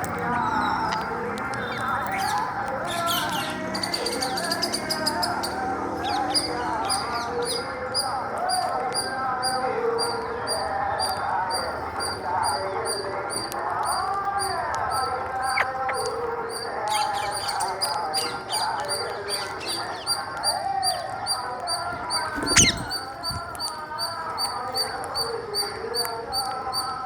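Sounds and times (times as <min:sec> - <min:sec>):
parrots chattering: 0:12.5 - 0:21.0, 0:22.2 - 0:23.5.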